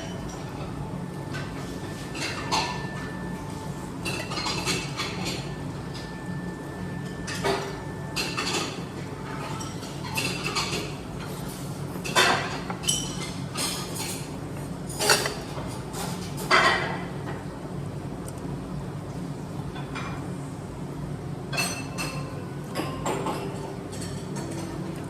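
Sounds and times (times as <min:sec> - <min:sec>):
low background hum: 0:00.0 - 0:25.0
dishes and cutlery clinking: 0:04.0 - 0:06.1, 0:07.3 - 0:17.0.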